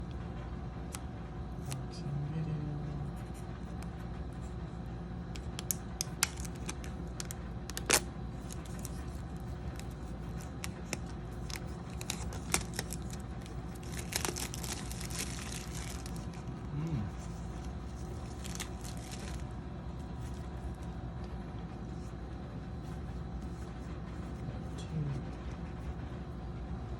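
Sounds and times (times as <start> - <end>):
steady low hum: 0.0 - 26.9
paper and plastic tearing: 5.6 - 16.4, 18.0 - 19.4.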